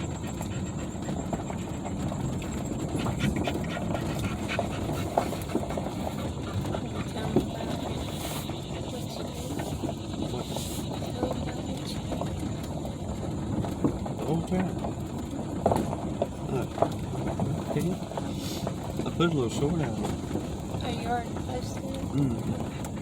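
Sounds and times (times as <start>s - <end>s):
dog panting: 0.0s - 13.0s
small rattles: 0.0s - 23.0s
truck road rumble: 0.0s - 23.0s.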